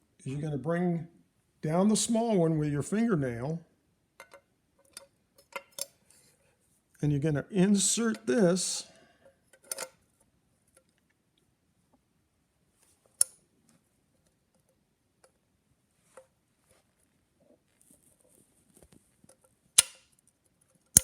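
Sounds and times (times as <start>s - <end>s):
faint metal ticks and scrapes: 4.2s - 6.7s, 8.8s - 11.1s
loud spring-loaded shaft click: 19.8s - 20.0s
sharp metallic click: 19.8s - 20.1s.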